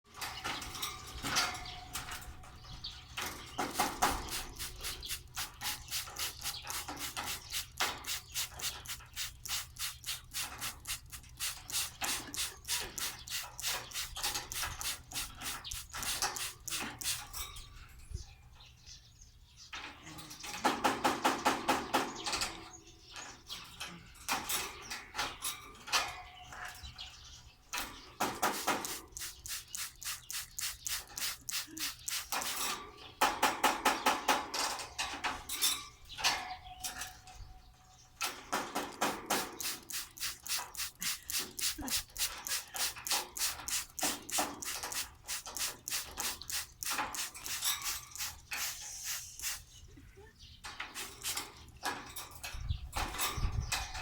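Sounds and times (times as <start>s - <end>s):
bird splashing in water bath: 3.6s - 17.4s, 28.3s - 32.8s, 38.6s - 49.6s.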